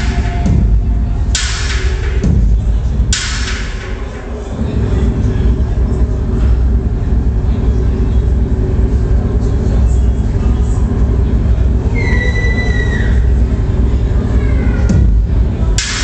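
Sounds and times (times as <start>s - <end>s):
electronic dance music: 0.0s - 16.0s
high squealing synth tone: 11.9s - 13.5s.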